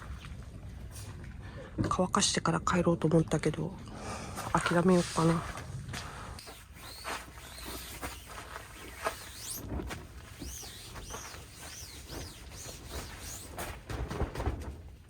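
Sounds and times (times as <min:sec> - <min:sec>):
light rustles and knocks: 0:06.0 - 0:15.0.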